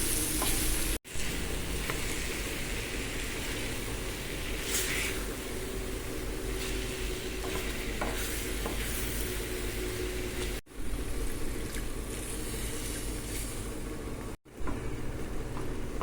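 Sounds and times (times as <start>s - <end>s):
food sizzling in a pan: 0.0s - 10.6s.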